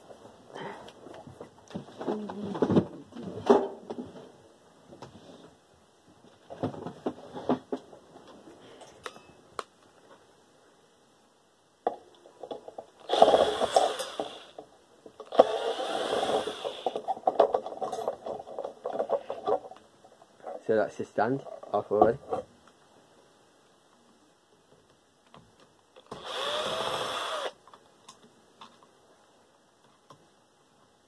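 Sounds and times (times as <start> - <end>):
parts and tools clicking: 12.1 - 19.9
power drill-driver running: 13.1 - 14.6, 15.2 - 17.0, 26.1 - 27.6.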